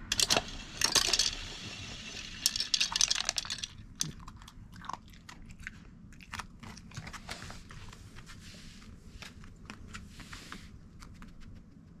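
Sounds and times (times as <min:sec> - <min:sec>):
dog crunching dry treats: 0:02.9 - 0:07.9.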